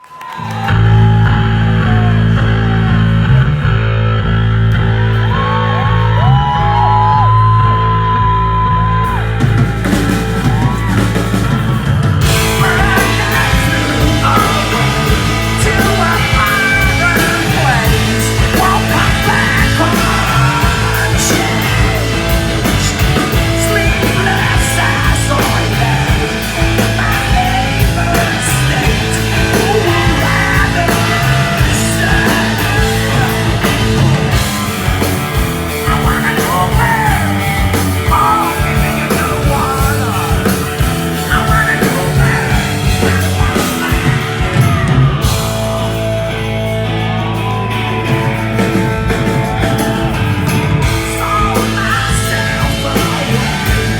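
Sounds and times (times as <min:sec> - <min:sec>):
live rock band: 0:00.0 - 0:53.9.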